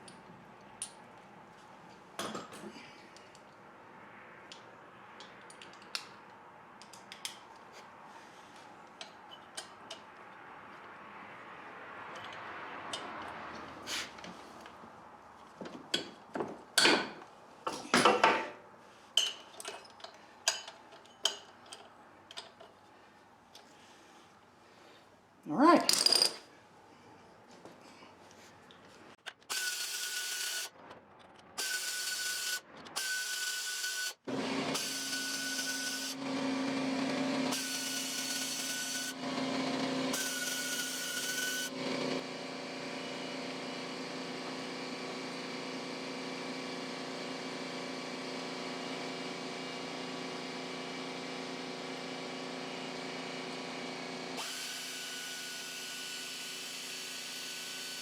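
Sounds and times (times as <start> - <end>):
power tool whining: 29.3 - 30.7, 31.6 - 58.0.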